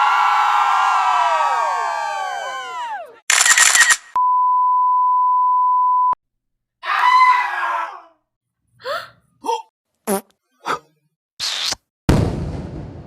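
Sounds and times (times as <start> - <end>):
censor beep: 4.2 - 6.2.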